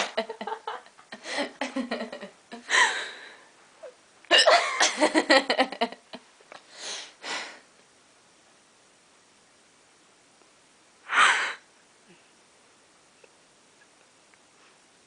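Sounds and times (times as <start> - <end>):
woman giggling: 0.0 - 3.1, 4.3 - 6.2
breathy breaths: 2.7 - 3.6, 6.6 - 7.7.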